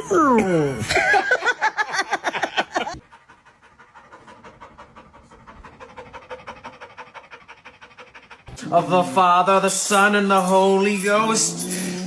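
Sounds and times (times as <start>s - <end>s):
dog panting: 2.4s - 9.8s.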